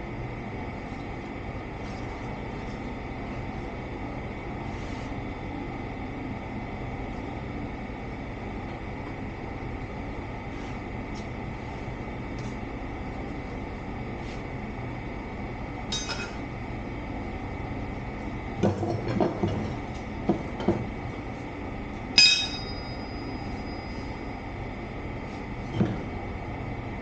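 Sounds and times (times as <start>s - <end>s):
steady background hum: 0.0s - 27.0s
metal tools clinking on steel wheel: 15.9s - 16.4s, 22.2s - 23.3s.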